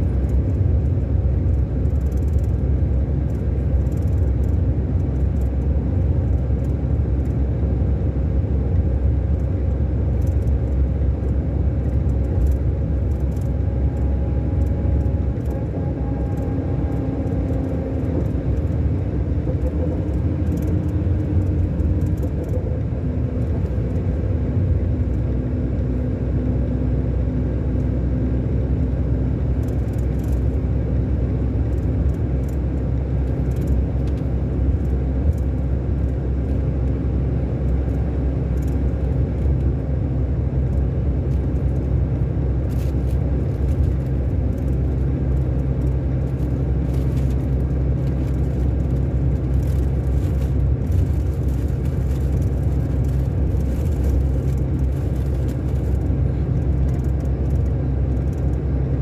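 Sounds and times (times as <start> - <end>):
diesel coach engine rumbling: 0.0 - 59.0
faint light rattles: 42.7 - 58.6.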